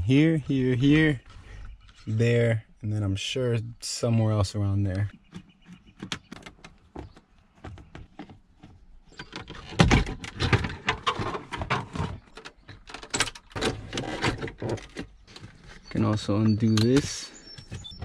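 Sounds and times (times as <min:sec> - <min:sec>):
plastic clicks knocks and rattling: 0:05.3 - 0:08.4, 0:09.1 - 0:15.6.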